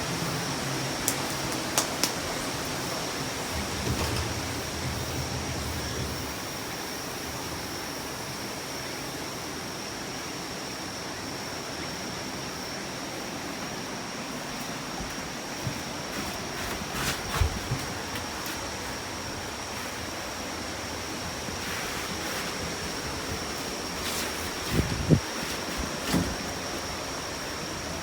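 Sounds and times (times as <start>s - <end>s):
wind and rain rushing: 0.0s - 8.3s, 15.0s - 28.0s.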